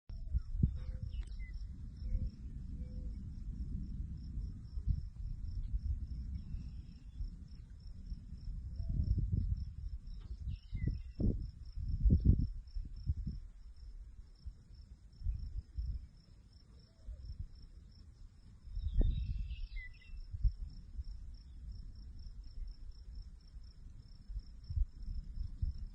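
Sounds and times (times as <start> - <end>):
insect chirping: 0.1 - 25.9
low rumbling gusts: 0.1 - 25.9.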